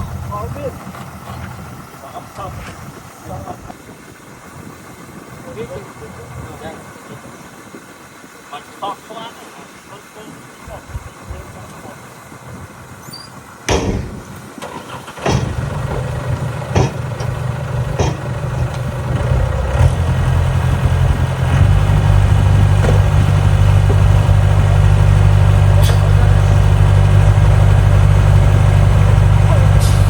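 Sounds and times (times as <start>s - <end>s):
heavy diesel engine running: 0.0s - 30.0s
sharp knocks and clanks: 13.7s - 20.0s, 22.5s - 26.6s.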